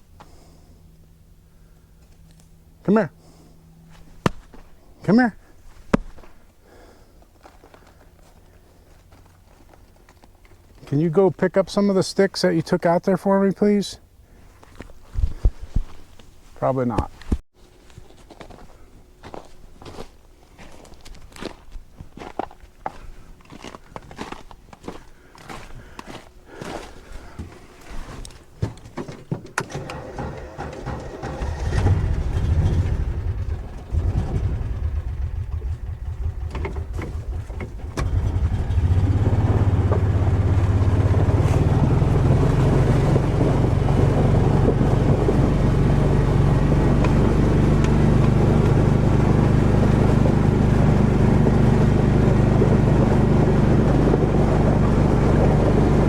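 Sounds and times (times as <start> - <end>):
footsteps: 3.9 - 4.8
vehicle engine running: 29.7 - 56.0.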